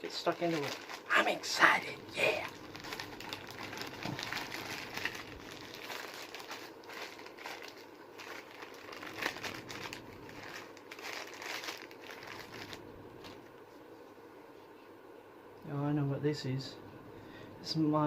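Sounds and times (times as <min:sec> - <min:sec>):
packaging crinkling: 0:00.0 - 0:13.5.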